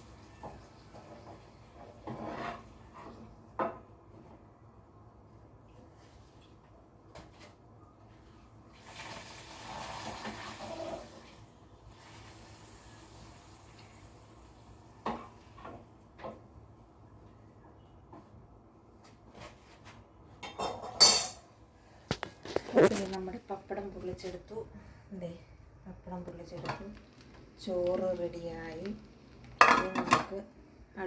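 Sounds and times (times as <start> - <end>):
food sizzling in hot oil: 8.7 - 15.5.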